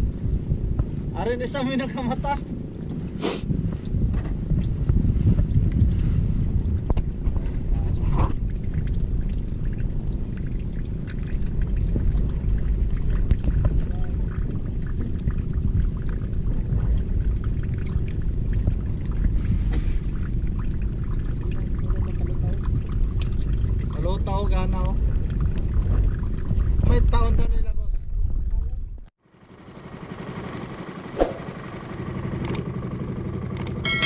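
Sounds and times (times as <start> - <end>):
water splashing along hull: 0.0 - 27.3
boat engine rumble: 0.0 - 27.4
wind on microphone: 0.0 - 29.1, 31.2 - 31.6.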